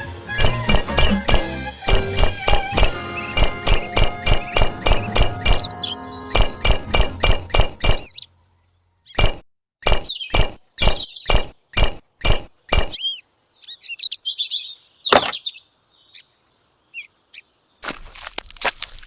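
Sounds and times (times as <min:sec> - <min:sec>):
short chirping sounds: 0:00.2 - 0:08.3
sharp knocks: 0:00.4 - 0:05.7, 0:06.3 - 0:08.1, 0:09.2 - 0:13.0, 0:15.1 - 0:15.4.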